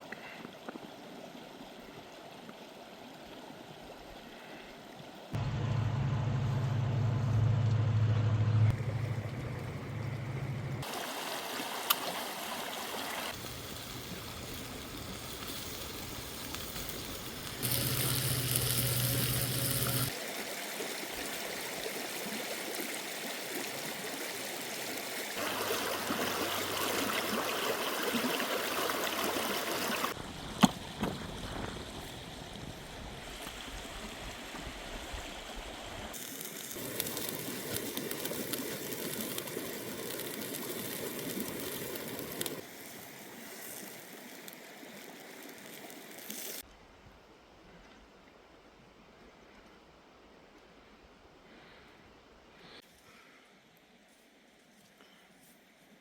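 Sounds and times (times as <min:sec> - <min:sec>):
rushing water: 0:00.0 - 0:06.0, 0:08.7 - 0:18.4, 0:19.4 - 0:46.7.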